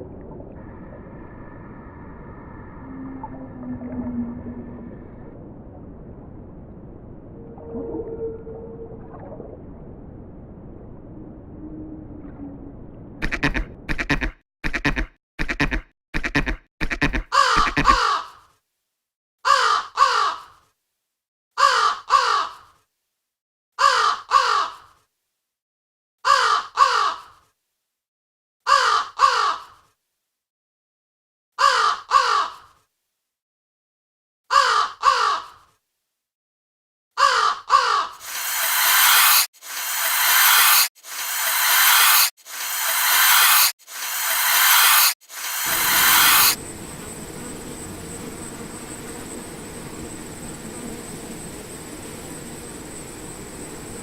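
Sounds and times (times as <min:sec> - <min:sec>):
harsh bird calls: 0:17.3 - 0:18.4.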